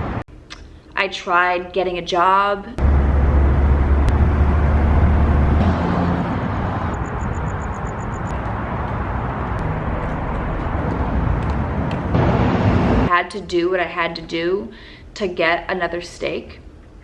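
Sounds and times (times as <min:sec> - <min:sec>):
vehicle road noise: 0:00.0 - 0:00.2, 0:02.8 - 0:13.1
deep rumble: 0:02.8 - 0:13.1.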